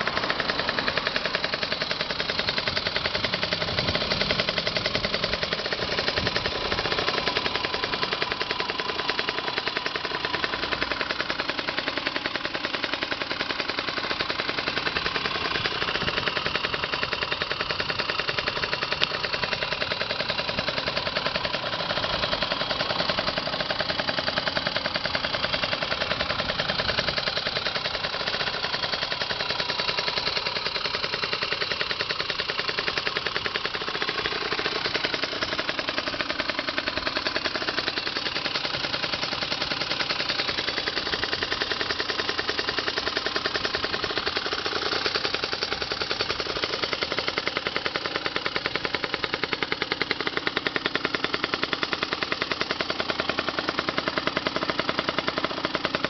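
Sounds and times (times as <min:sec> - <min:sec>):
two-stroke motorcycle engine running: 0:00.0 - 0:56.0.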